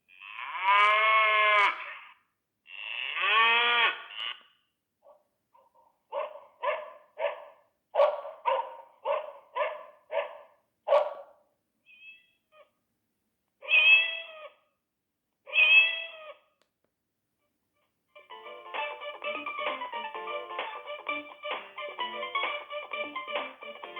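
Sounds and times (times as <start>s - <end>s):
phone ringtone cat meows: 13.7s - 14.5s, 15.5s - 16.3s.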